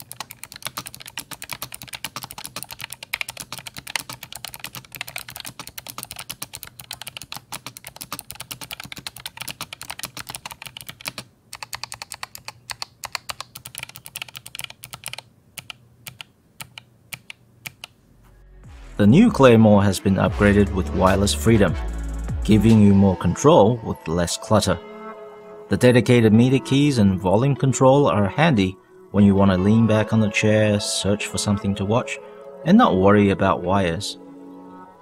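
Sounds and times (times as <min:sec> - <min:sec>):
clicky keyboard typing: 0:00.0 - 0:18.0.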